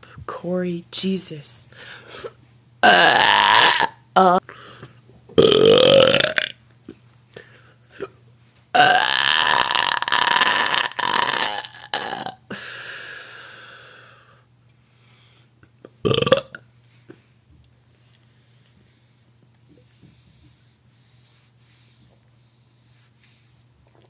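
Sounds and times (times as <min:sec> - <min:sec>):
woman belching: 0:02.8 - 0:04.3, 0:05.4 - 0:06.6, 0:08.8 - 0:12.4, 0:16.0 - 0:16.6.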